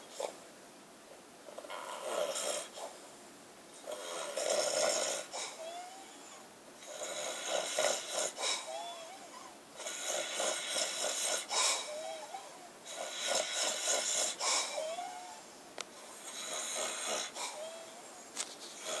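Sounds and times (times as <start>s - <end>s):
man snoring: 3.8s - 5.4s, 6.8s - 8.5s, 9.8s - 12.3s, 12.9s - 15.2s, 16.2s - 17.9s, 18.8s - 19.0s.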